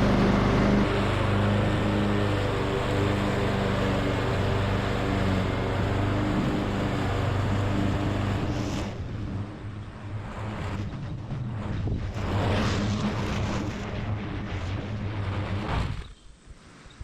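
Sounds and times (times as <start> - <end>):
ride-on lawnmower engine: 0.0 - 10.7.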